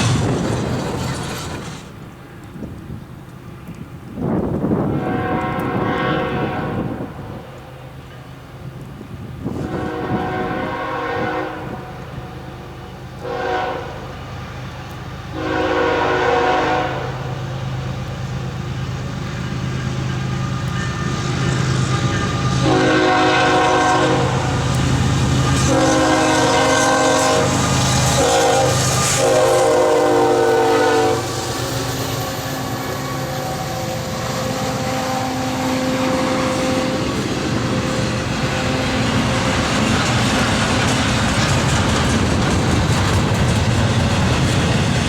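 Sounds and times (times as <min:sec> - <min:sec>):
diesel train rumble: 0:00.0 - 0:45.0
train air horn blasts: 0:04.7 - 0:08.1, 0:09.4 - 0:14.3, 0:15.3 - 0:17.4, 0:20.0 - 0:39.5.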